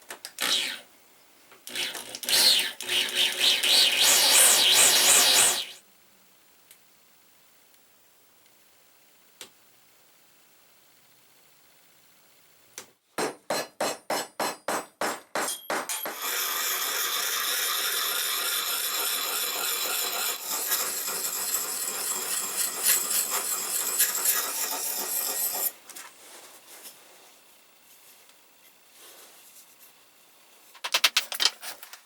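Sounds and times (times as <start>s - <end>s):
rough rubbing or grinding: 1.7s - 5.8s
hammer strikes: 13.2s - 16.2s.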